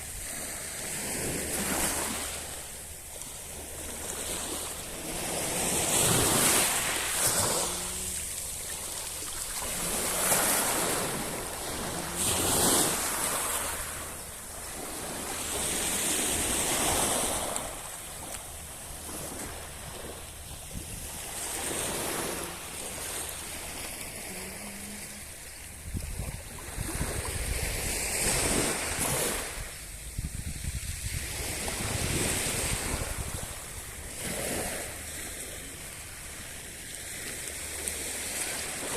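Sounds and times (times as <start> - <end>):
sea waves breaking on shore: 0.0 - 38.9
wind buffeting microphone: 25.7 - 34.0.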